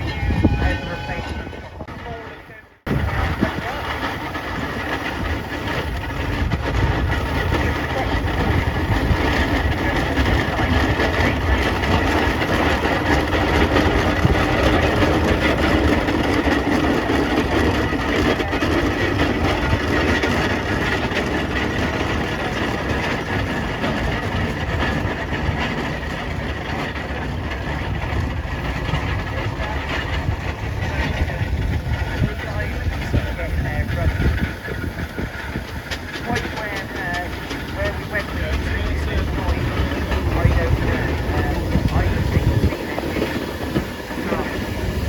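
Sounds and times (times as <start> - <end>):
steam engines running: 0.0 - 45.0.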